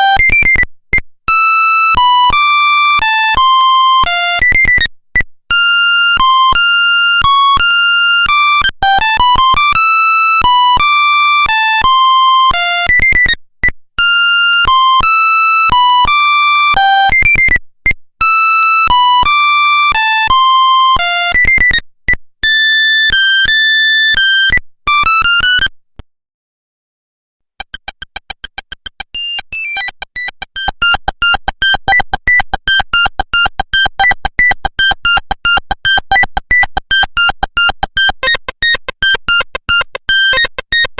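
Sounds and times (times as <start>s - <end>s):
ringtone of rapid beeps: 23.0s - 25.7s, 27.6s - 40.9s
beeping ringtone melody: 27.6s - 40.9s.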